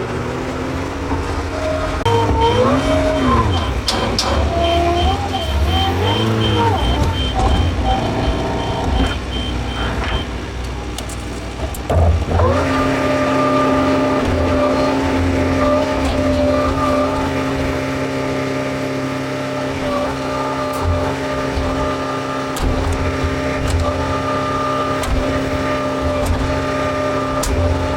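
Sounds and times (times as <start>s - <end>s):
backhoe diesel engine revving: 0.0s - 27.9s
reversing alarm beeping: 1.6s - 10.5s.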